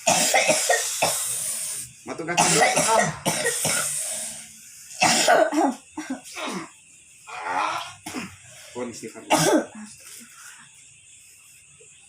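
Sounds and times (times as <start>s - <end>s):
person coughing: 0.0s - 1.3s, 2.4s - 4.0s, 5.0s - 6.7s, 9.3s - 9.8s
strained voiced sounds: 7.3s - 8.2s.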